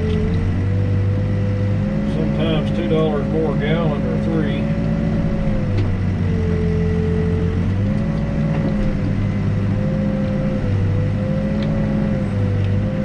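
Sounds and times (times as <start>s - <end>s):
diesel engine droning: 0.0s - 13.0s
steady whine: 0.0s - 13.0s.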